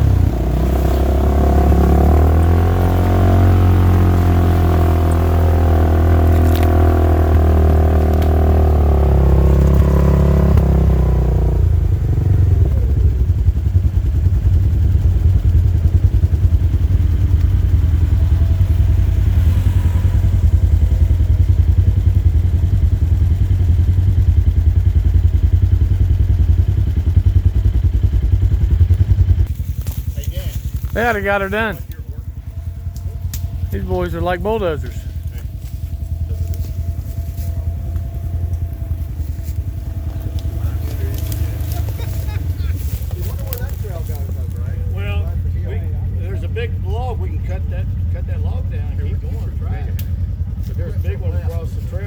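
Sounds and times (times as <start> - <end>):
utility vehicle engine running: 0.0 - 52.0.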